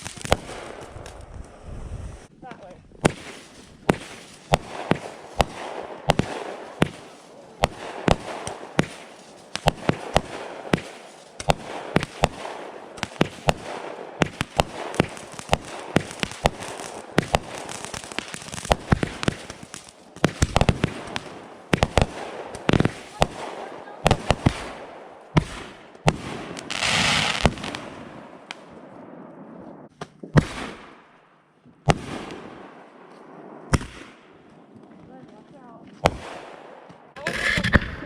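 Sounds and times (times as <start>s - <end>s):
fireworks crackling: 0.0s - 31.2s, 31.8s - 38.0s
firecrackers banging: 3.0s - 31.1s.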